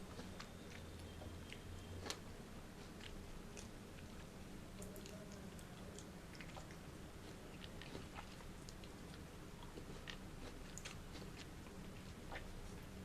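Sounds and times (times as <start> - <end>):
chewing fruit: 0.0 - 13.0.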